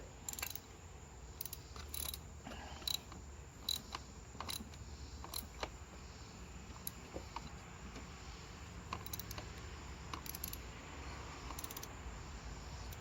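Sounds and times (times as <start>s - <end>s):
ratchet wrench clicking: 0.3s - 0.6s, 1.4s - 2.2s, 2.8s - 5.6s, 8.9s - 10.7s, 11.4s - 12.0s.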